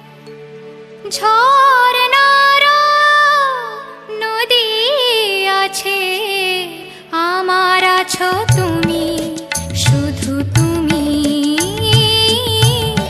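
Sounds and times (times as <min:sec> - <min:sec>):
person singing: 0:01.0 - 0:13.0
low accompaniment: 0:08.3 - 0:13.0.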